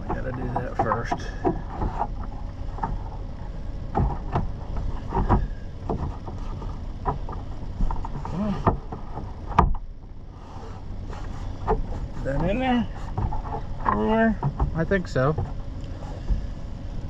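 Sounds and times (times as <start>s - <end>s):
steady low hum: 0.0s - 17.0s
clicks and knocks of parts: 3.9s - 9.9s.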